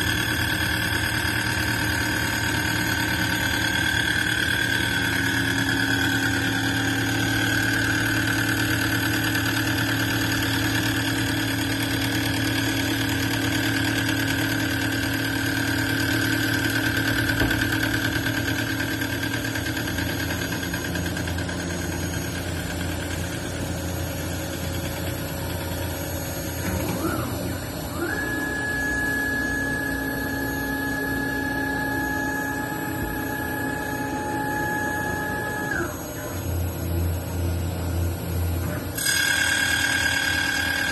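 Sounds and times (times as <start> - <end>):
cnc machine motors humming: 0.0 - 40.9
high-pitched machine whine: 0.0 - 40.9.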